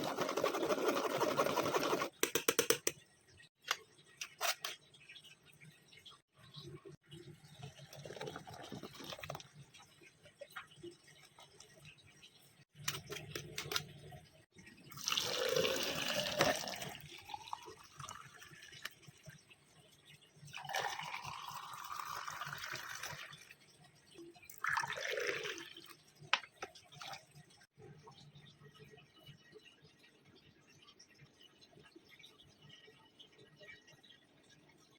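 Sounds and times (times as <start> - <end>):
juice being poured: 7.5 - 9.8, 14.9 - 19.2, 20.5 - 23.5, 24.5 - 27.3.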